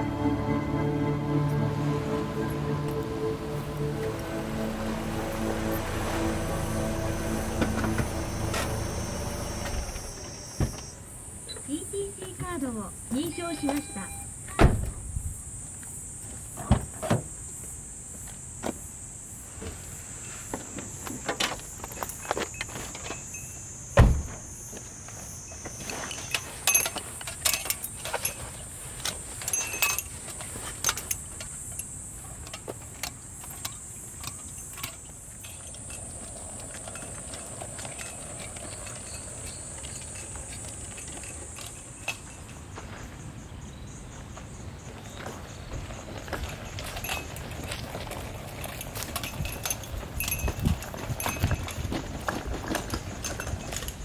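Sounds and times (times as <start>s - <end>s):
high-pitched drone: 0.0s - 11.0s
dull thump: 24.0s - 24.4s.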